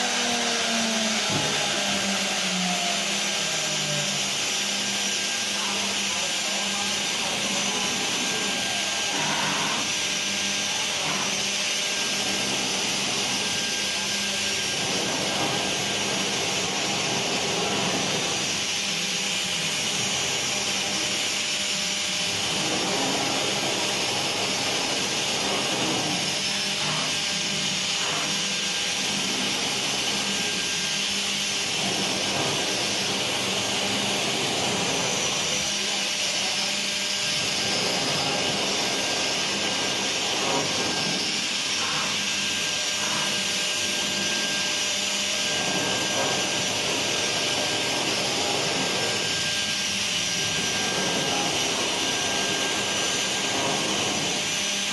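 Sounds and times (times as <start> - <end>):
router bits cutting wood: 0.0 - 54.9
router spindle high whine: 0.0 - 54.9.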